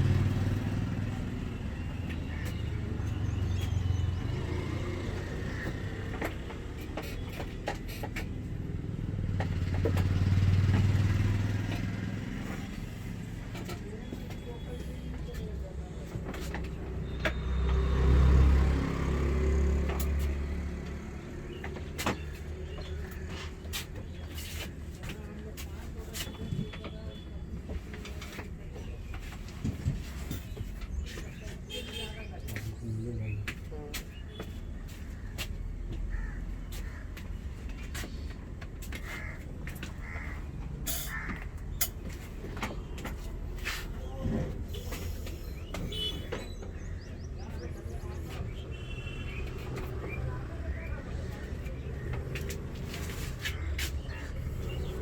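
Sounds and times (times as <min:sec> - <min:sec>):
motor vehicle passing: 0:00.0 - 0:06.9, 0:08.6 - 0:13.5, 0:16.6 - 0:22.0
crows cawing: 0:36.1 - 0:37.3, 0:39.0 - 0:41.6.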